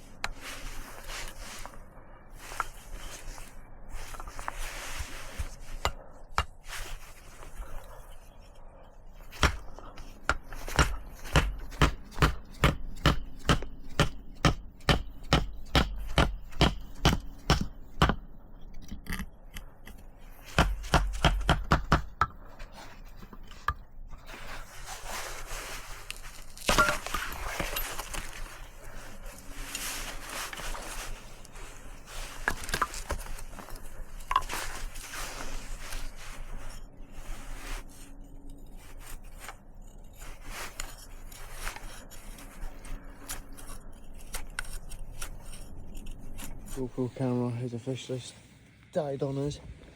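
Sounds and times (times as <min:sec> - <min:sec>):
blade chopping firewood: 0:05.2 - 0:07.0, 0:09.2 - 0:18.3, 0:20.4 - 0:22.4, 0:26.4 - 0:28.4, 0:32.4 - 0:34.9
wood scraping and rustling: 0:22.5 - 0:46.8.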